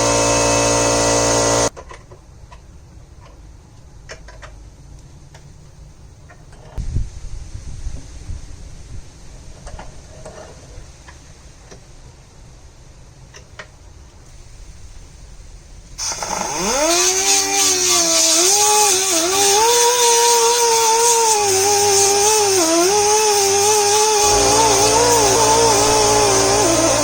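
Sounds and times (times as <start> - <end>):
pneumatic die grinder whine: 0.0 - 1.7, 14.3 - 27.0
air hiss: 14.3 - 27.0.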